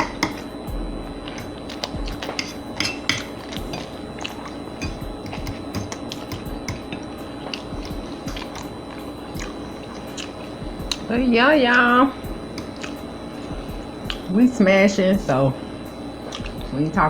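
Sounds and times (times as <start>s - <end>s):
forks clicking against plates: 0.0s - 0.5s, 1.4s - 8.7s
faint background music: 0.0s - 17.0s
chewing and mouth clicks: 3.3s - 11.1s, 12.3s - 14.3s, 16.2s - 16.7s.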